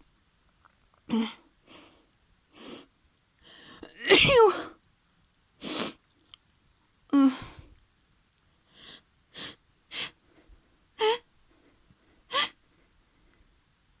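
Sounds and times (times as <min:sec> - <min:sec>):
woman sniffing: 0:02.6 - 0:02.9, 0:05.6 - 0:06.0
woman sneezing: 0:03.9 - 0:04.7.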